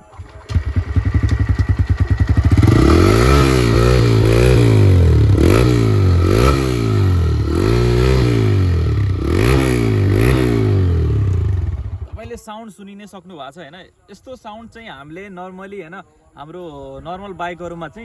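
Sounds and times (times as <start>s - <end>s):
motorcycle engine revving: 0.0s - 12.3s.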